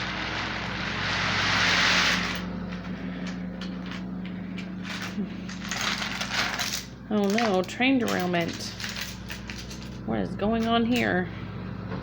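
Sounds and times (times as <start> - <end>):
toy train motor humming: 0.0 - 4.0.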